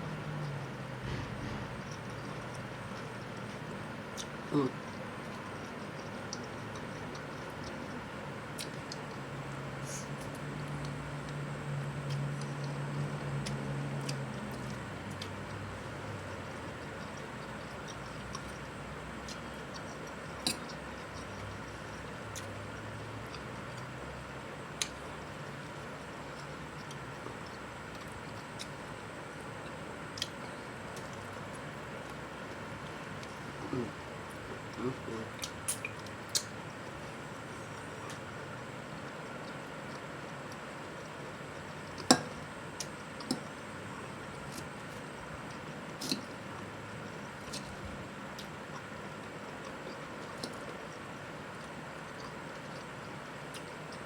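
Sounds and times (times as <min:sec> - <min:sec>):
steady low hum: 0:00.0 - 0:54.0
sharp clicks while eating: 0:00.4 - 0:09.2, 0:12.0 - 0:24.0, 0:29.6 - 0:37.1, 0:38.9 - 0:43.6, 0:44.3 - 0:46.7, 0:47.4 - 0:54.0.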